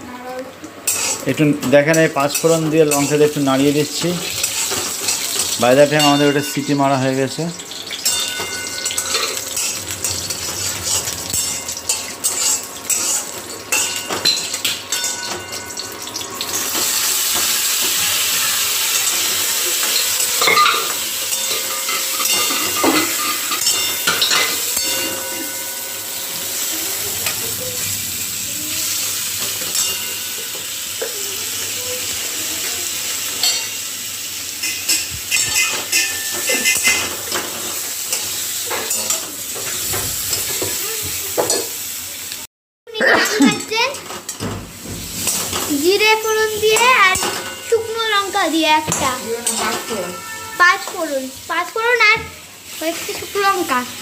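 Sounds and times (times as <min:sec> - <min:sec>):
spices frying in hot oil: 0:00.0 - 0:54.0.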